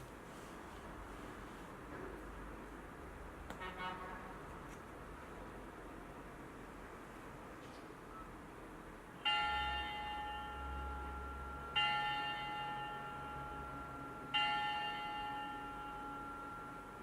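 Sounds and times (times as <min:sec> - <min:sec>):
recorded bell ringing: 0:09.2 - 0:17.0.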